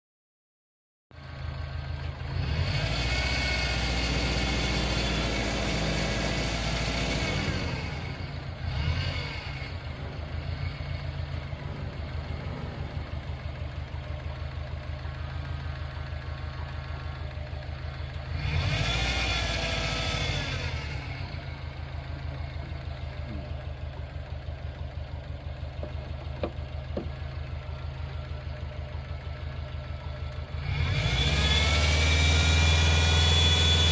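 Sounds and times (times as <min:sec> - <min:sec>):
car engine revving: 0:02.1 - 0:24.5, 0:29.6 - 0:33.9.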